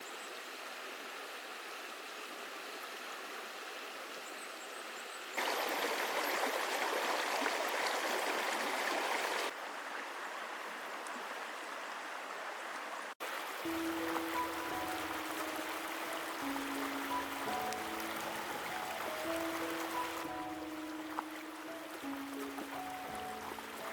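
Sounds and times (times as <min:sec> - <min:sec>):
stream water rushing: 0:05.4 - 0:23.9
music with held notes: 0:13.6 - 0:23.9.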